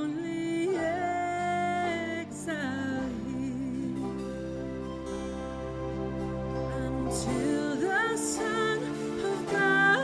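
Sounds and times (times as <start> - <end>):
backing music: 0.0 - 10.0
children's choir singing: 6.6 - 10.0.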